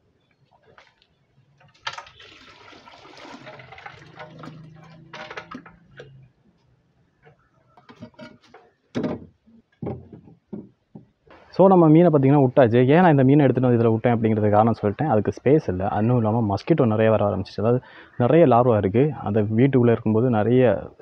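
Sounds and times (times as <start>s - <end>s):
water pouring and splashing: 0.5s - 6.3s
handling knocks: 7.9s - 11.2s.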